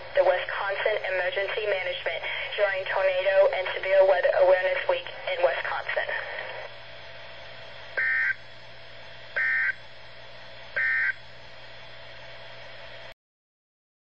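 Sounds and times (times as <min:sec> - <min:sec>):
radio hiss: 0:00.0 - 0:13.2
two-tone digital data bursts: 0:08.0 - 0:08.4, 0:09.4 - 0:09.8, 0:10.8 - 0:11.2.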